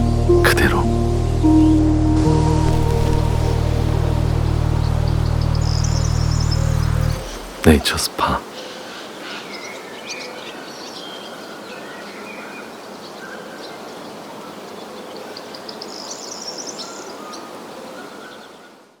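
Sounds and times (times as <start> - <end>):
steady outdoor hiss: 0.0 - 1.8, 2.7 - 19.0.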